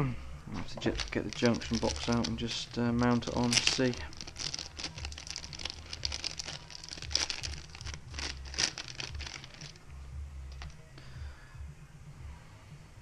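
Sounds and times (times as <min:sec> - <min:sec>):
plastic packaging crinkling: 0:00.7 - 0:09.8.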